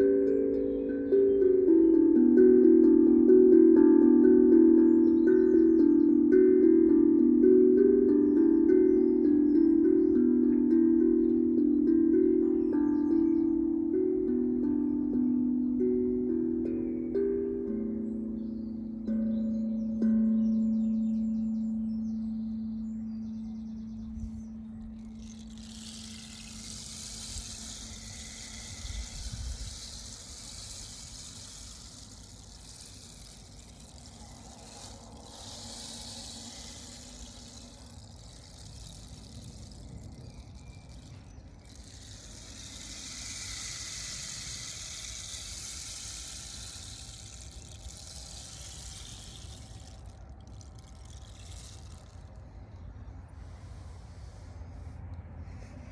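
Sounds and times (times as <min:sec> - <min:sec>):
rushing hiss: 0:25.1 - 0:52.8, 0:53.4 - 0:55.9.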